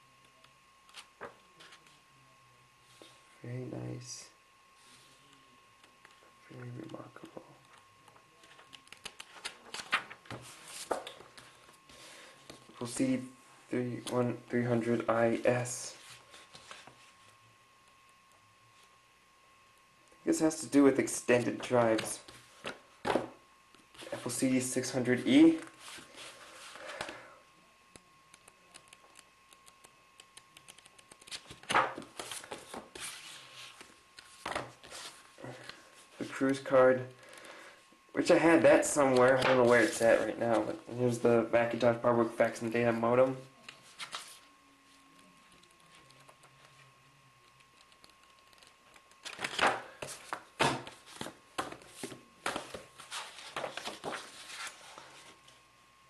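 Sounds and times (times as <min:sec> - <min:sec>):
paper rustling: 0:08.4 - 0:12.7, 0:31.0 - 0:36.6, 0:39.0 - 0:40.7, 0:43.7 - 0:44.5, 0:48.4 - 0:55.4.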